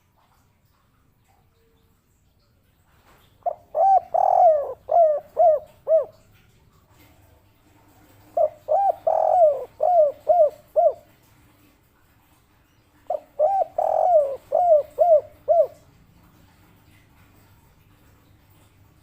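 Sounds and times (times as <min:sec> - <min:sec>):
dove cooing: 0:03.4 - 0:06.3, 0:08.0 - 0:11.2, 0:13.1 - 0:15.9.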